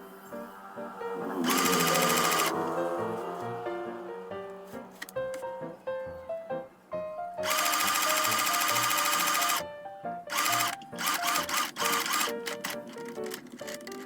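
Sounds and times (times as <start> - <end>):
sewing machine stitching: 1.4 - 2.7, 7.4 - 9.6, 10.3 - 14.0
ragtime piano music: 2.6 - 14.0.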